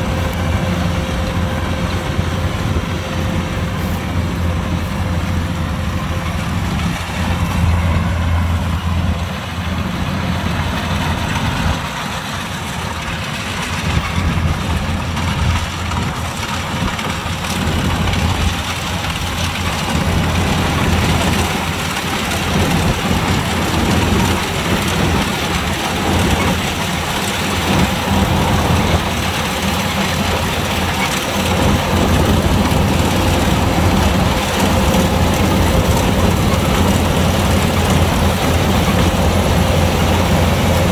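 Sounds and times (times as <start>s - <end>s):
combine harvester running: 0.0s - 40.9s.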